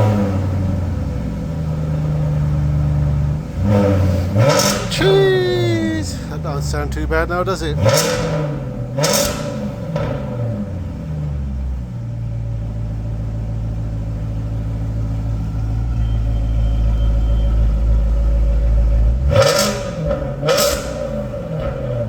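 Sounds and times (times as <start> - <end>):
car engine idling deep drone: 0.0 - 22.0
engine revving: 2.0 - 4.9, 7.7 - 11.2, 17.3 - 22.0.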